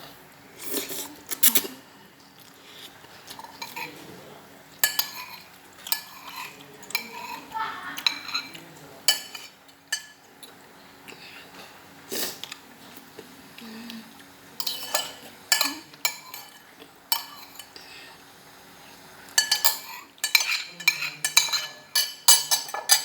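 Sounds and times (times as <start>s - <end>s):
cutlery clinking against a dish: 3.3s - 4.0s, 4.8s - 10.6s, 14.6s - 17.8s, 19.3s - 23.0s.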